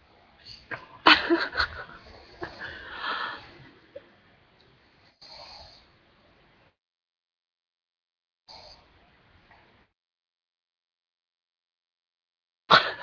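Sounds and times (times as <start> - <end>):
soft breath: 1.6 - 4.2.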